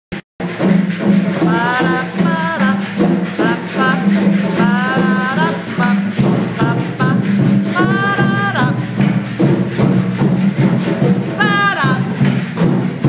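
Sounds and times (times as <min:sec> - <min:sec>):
hand drums playing: 0:00.4 - 0:13.0
shakers: 0:00.4 - 0:13.0
voices singing: 0:01.2 - 0:09.1, 0:11.0 - 0:12.6.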